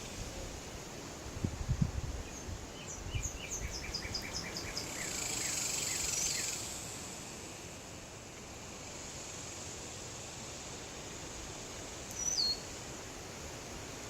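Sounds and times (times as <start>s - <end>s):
high hiss: 0.0s - 14.0s
songbird singing: 2.2s - 6.8s, 12.1s - 12.8s.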